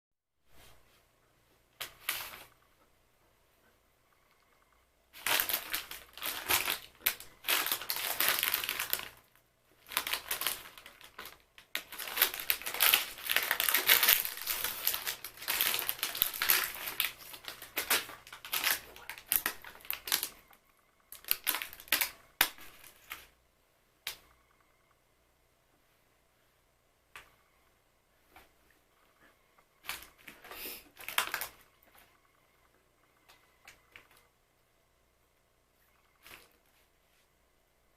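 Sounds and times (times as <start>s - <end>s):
biscuit packet crinkling: 5.2s - 20.5s, 21.1s - 23.3s, 29.8s - 31.9s.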